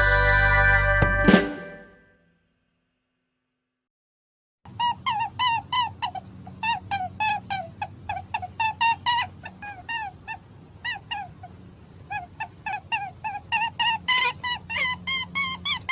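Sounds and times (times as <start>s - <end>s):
squeaky toy squeaking: 4.8s - 10.2s, 12.1s - 15.9s.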